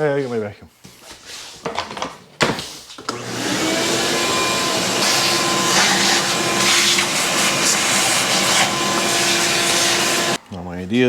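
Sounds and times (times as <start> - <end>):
vacuum cleaner running: 3.0 - 10.4.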